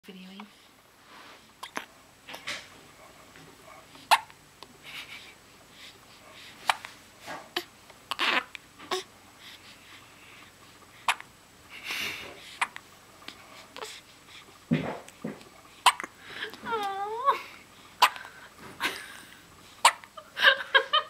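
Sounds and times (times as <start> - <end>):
soft breathing: 0.4 - 1.6, 4.7 - 7.8, 8.8 - 14.7, 15.6 - 19.9
hiccups: 1.6 - 1.9, 4.1 - 4.4, 15.8 - 16.1, 19.8 - 20.1.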